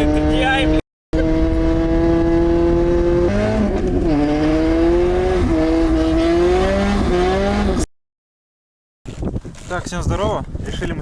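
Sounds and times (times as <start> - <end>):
loud car engine revving: 0.0 - 7.9.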